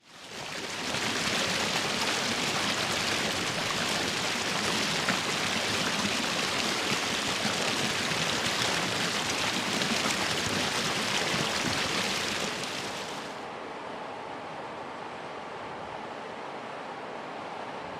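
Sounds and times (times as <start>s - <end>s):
river rushing: 0.2s - 13.4s.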